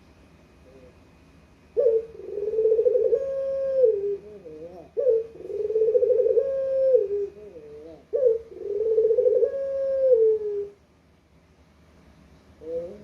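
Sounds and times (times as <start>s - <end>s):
dove cooing: 0.6s - 1.0s, 1.7s - 10.8s, 12.6s - 13.0s.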